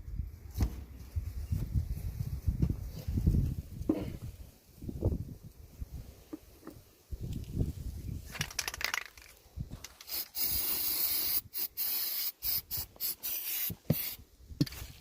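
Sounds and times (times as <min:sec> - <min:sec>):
hissing spray bursts: 0:10.0 - 0:14.2.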